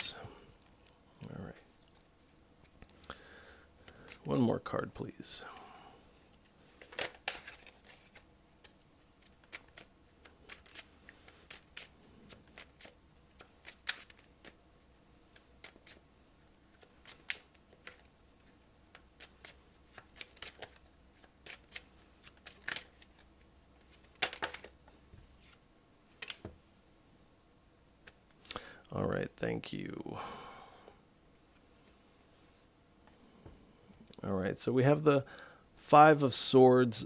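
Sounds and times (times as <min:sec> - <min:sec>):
cards being shuffled: 0:06.4 - 0:14.6, 0:15.2 - 0:26.6.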